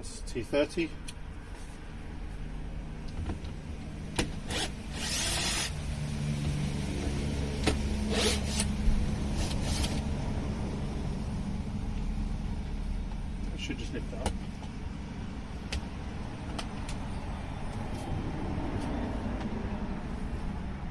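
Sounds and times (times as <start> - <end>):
low mechanical hum: 0.0 - 18.2
parts and screws clicking: 4.2 - 5.8, 7.6 - 8.8, 9.4 - 10.0.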